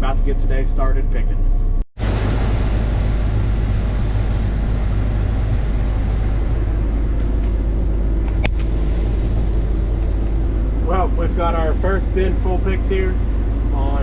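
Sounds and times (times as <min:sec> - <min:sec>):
combine engine drone: 0:00.0 - 0:14.0
sharp click: 0:08.3 - 0:08.7.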